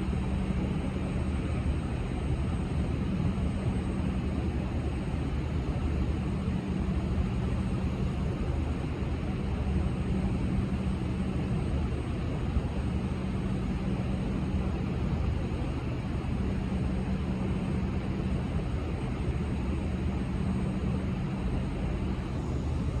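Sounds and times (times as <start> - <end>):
diesel locomotive engine droning: 14.3 - 23.0.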